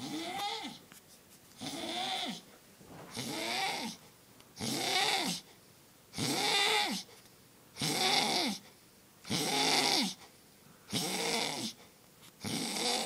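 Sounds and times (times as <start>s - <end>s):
man snoring heavily: 3.1s - 4.0s, 4.6s - 5.4s, 6.2s - 7.0s, 7.8s - 8.6s, 9.3s - 10.2s, 10.9s - 11.8s, 12.4s - 13.0s.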